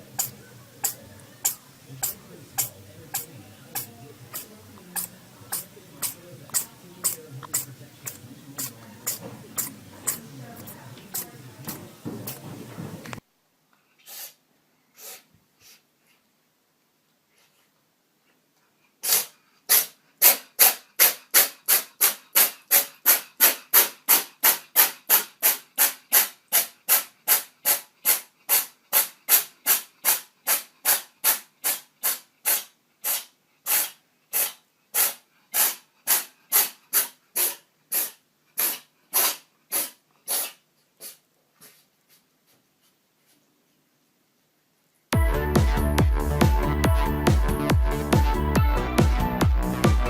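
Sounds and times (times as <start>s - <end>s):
cat sneezing: 0.1s - 11.8s, 14.0s - 14.4s, 15.0s - 15.8s, 19.0s - 41.8s.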